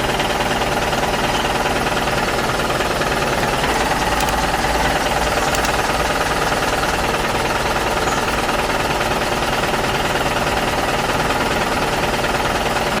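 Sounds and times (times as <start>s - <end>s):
toy tractor motor rattling: 3.1s - 10.8s.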